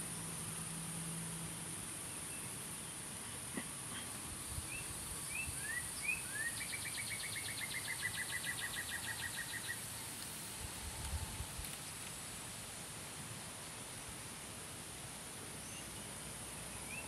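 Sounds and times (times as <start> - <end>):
insects chorus: 0.0 - 17.0
songbird singing a trill: 4.4 - 11.5, 15.5 - 17.0.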